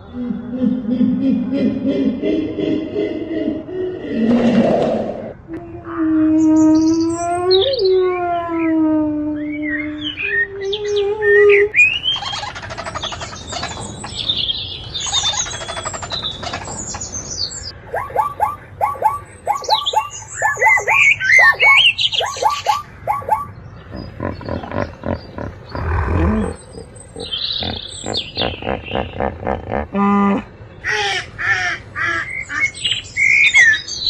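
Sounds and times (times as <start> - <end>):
birds chirping and calling: 9.4 - 34.0
repeated short bird calls: 11.6 - 33.9
rough low animal sound: 23.8 - 30.5.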